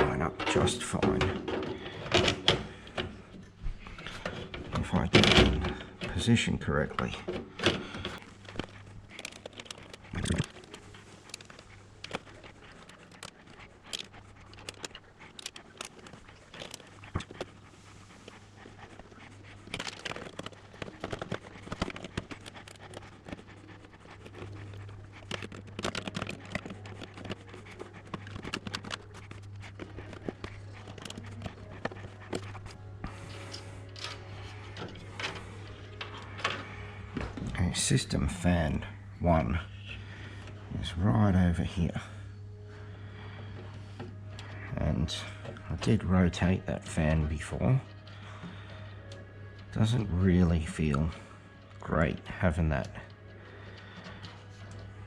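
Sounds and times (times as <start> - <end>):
steady low hum: 0.0 - 55.0
clicks taps and scrapes of handling: 18.2 - 37.5.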